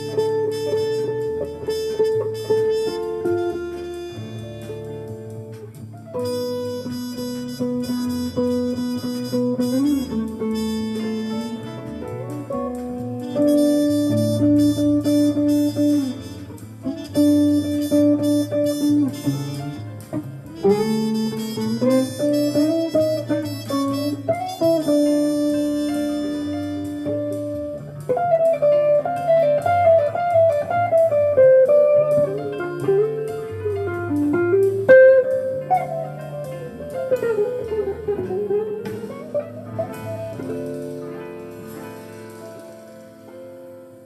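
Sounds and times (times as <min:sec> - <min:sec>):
jazz guitar melody: 0:00.0 - 0:44.0.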